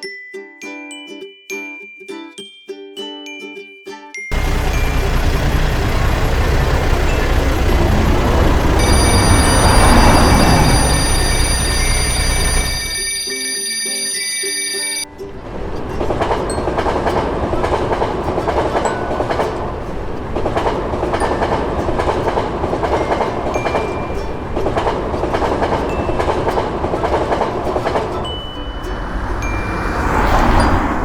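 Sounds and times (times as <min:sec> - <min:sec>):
level crossing warning bell: 0:04.3 - 0:15.1, 0:21.2 - 0:31.0
train wheels clattering on rails: 0:04.4 - 0:12.8, 0:16.0 - 0:28.2.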